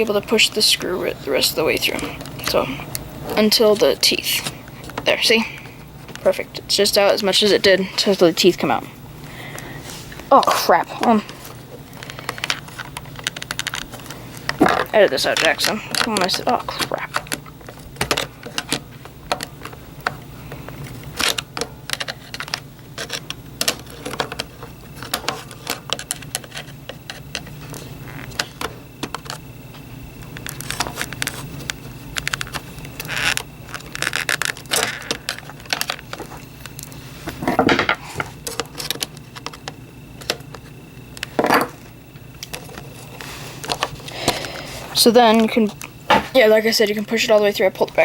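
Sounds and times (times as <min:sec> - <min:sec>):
small parts clicking and rattling: 0:11.0 - 0:29.4, 0:30.3 - 0:48.0
scraping of parts: 0:30.4 - 0:40.5.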